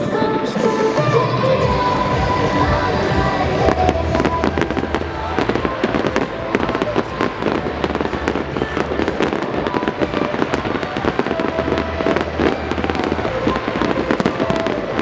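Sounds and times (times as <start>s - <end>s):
fireworks crackling: 0.0s - 15.0s.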